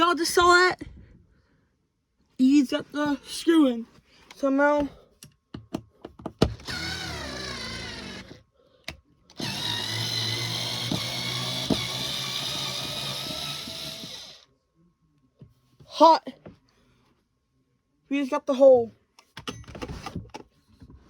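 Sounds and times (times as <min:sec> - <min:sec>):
power tool motor whirring: 0:06.5 - 0:08.4, 0:09.3 - 0:14.4.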